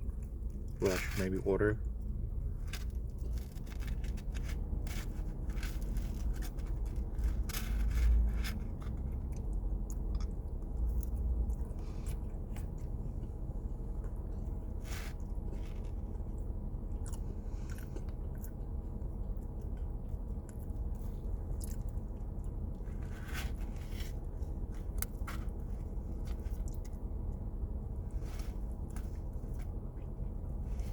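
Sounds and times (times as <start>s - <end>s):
steady low hum: 0.0s - 30.9s
chewing mouth clicks and smacks: 8.8s - 13.0s, 16.0s - 22.8s.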